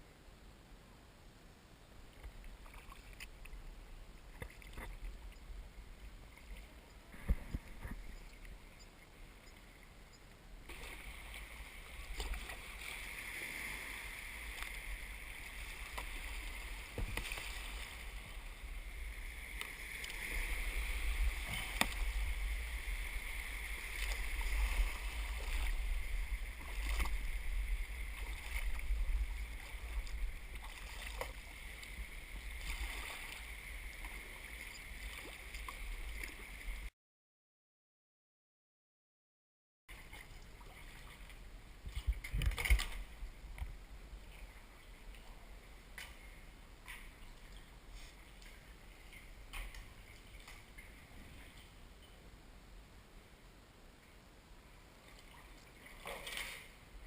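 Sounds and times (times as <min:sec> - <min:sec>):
paddle splashing water: 0:02.1 - 0:36.9, 0:39.9 - 0:52.2, 0:55.0 - 0:57.0.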